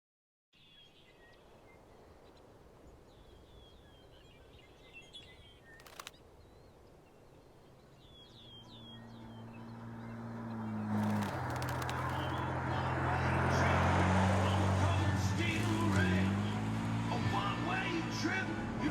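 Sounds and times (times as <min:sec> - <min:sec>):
birds chirping: 0:00.6 - 0:18.2
sharp click: 0:05.8 - 0:06.2.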